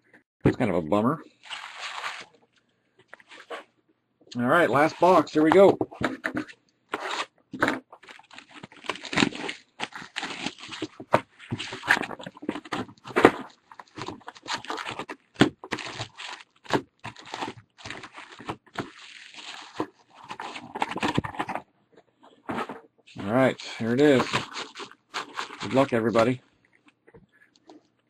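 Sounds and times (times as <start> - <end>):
plastic wrap and cardboard tearing: 1.4 - 2.3, 6.9 - 21.6, 22.6 - 26.4.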